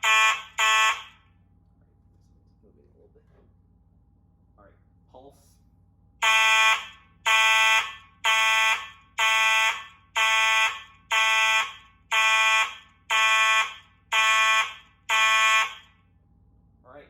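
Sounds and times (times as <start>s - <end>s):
fire alarm horn blasts: 0.0s - 1.3s, 6.2s - 16.1s.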